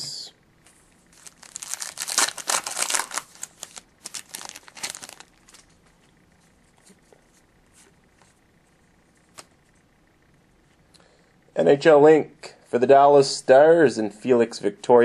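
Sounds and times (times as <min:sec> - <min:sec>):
card pack wrapper crinkling and tearing: 0:01.1 - 0:05.8.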